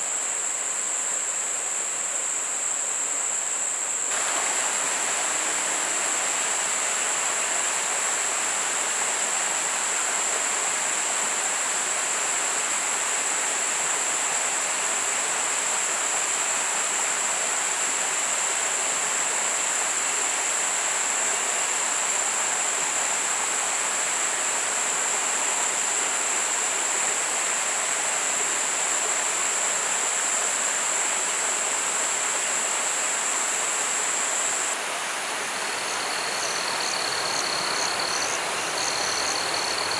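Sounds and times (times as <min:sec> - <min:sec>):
forest river rushing: 0:03.9 - 0:11.6, 0:28.0 - 0:39.9
high-pitched insect drone: 0:28.2 - 0:39.9.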